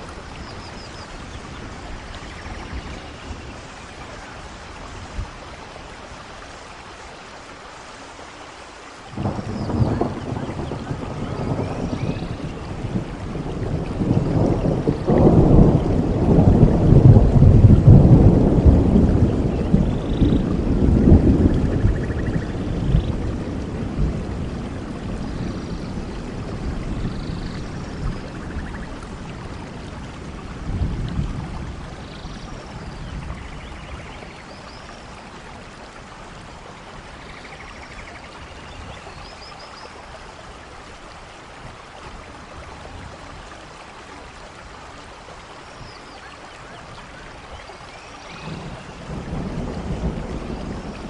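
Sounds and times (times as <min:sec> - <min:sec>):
steady rain falling: 0:00.0 - 0:51.0
low thunder rumbling: 0:09.1 - 0:39.2, 0:48.2 - 0:51.0.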